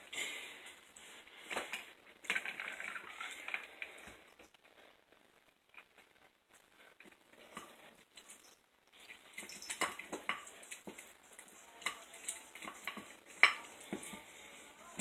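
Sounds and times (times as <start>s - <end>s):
spoon scraping in a bowl: 7.5s - 14.6s.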